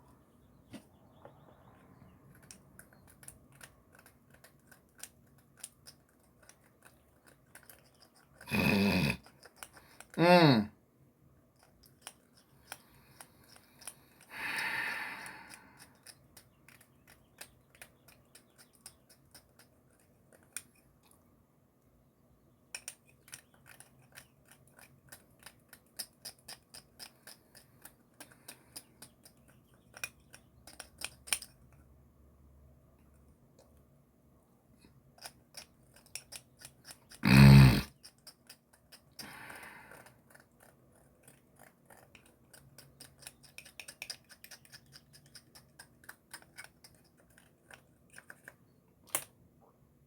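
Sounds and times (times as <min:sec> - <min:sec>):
crunchy snack being chewed: 0:35.2 - 0:48.6.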